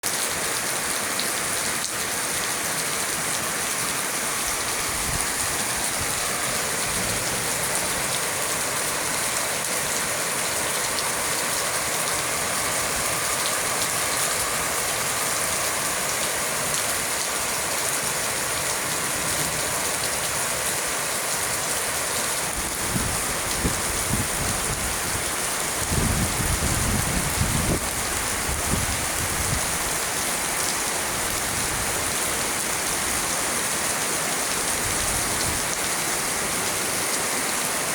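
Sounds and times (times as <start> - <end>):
heavy rain pouring: 0.0 - 37.9
wind buffeting microphone: 22.5 - 30.0.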